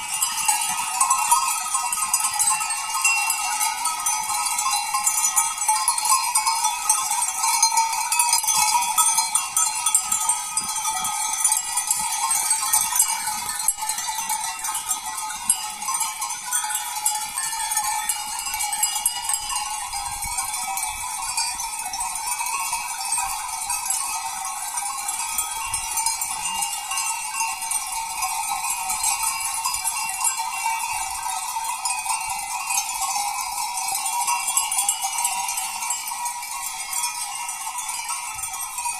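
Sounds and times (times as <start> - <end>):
goat bells clanking: 0.0 - 38.9.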